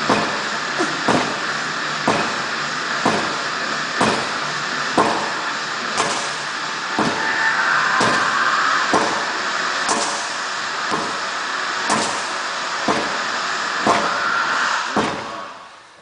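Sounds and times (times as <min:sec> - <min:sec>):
sledgehammer strikes: 0:00.0 - 0:01.4, 0:02.0 - 0:02.4, 0:03.0 - 0:03.4, 0:04.0 - 0:11.2, 0:11.9 - 0:13.2, 0:13.8 - 0:15.5.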